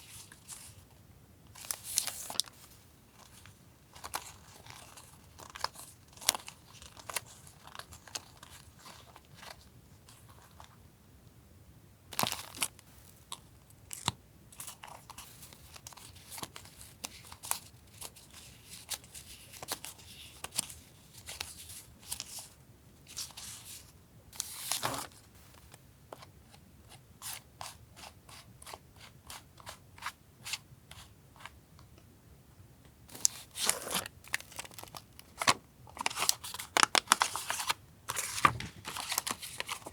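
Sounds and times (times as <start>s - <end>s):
paper and plastic crinkling: 33.1s - 39.9s.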